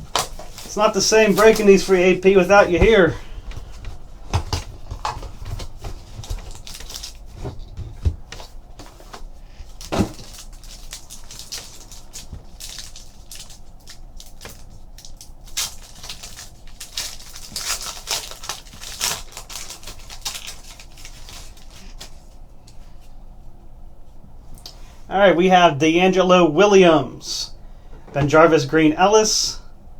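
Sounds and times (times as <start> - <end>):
packaging rustling: 0.0 - 22.4.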